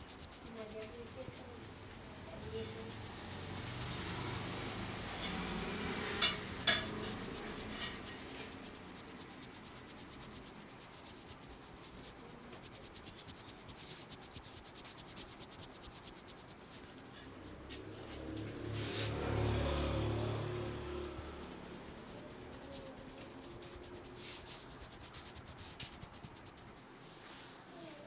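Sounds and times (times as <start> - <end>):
hands rubbing hair and scalp: 0.0 - 28.0.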